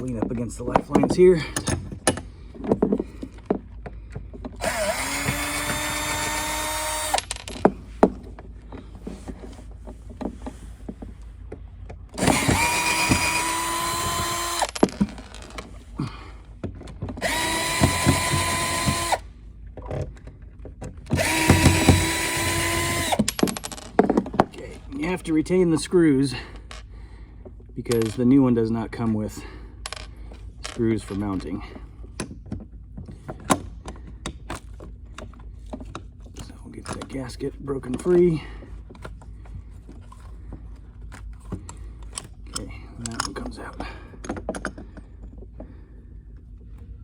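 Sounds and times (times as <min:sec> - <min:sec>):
cordless drill motor whine: 0:04.6 - 0:07.5, 0:12.2 - 0:15.4, 0:17.2 - 0:19.3, 0:21.1 - 0:23.3.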